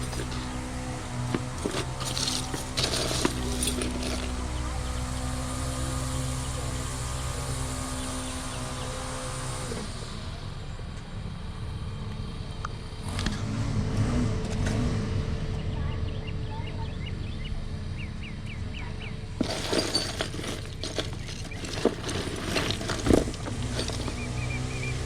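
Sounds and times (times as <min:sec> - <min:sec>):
jewelry clinking and rattling: 0:00.0 - 0:04.6, 0:19.4 - 0:24.8.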